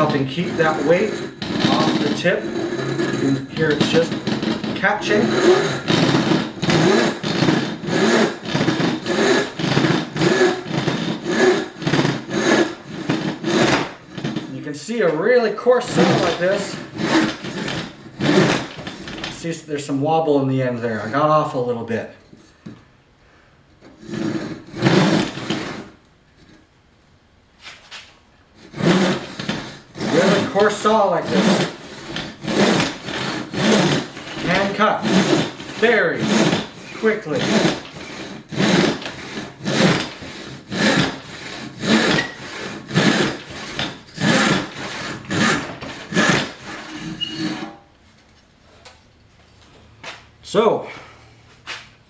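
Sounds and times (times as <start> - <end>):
hand saw cutting a board: 0.0 - 14.6, 15.7 - 19.5, 20.8 - 21.3, 23.8 - 26.0, 28.6 - 47.8.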